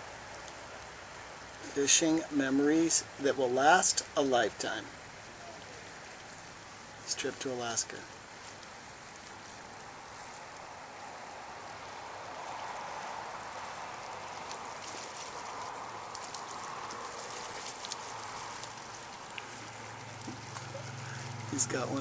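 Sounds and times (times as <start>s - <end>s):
water rushing: 0.0s - 22.0s
faint ticks: 14.3s - 21.4s.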